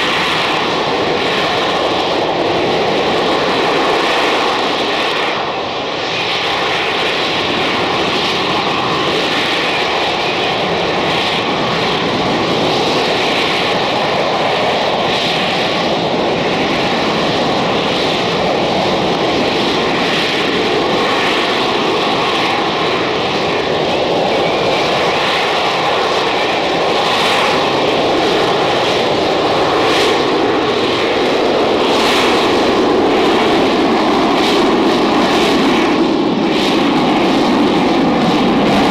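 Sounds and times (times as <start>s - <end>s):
loud jet engine noise: 0.0s - 38.9s.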